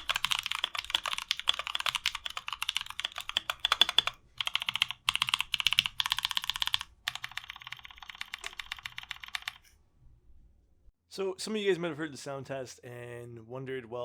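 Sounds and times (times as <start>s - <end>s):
mechanical keyboard typing: 0.0s - 9.7s.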